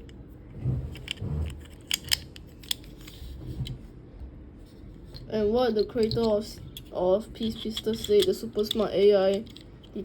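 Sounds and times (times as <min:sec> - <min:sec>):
plastic toy parts clicking: 0:01.0 - 0:03.2, 0:05.7 - 0:10.0.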